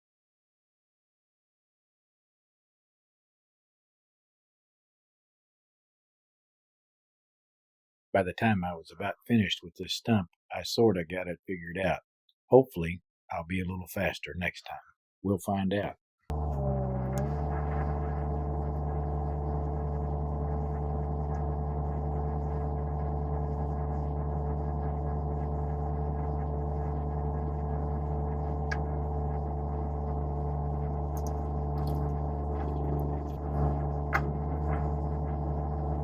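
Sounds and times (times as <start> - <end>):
stump grinder machine humming: 16.3 - 36.0.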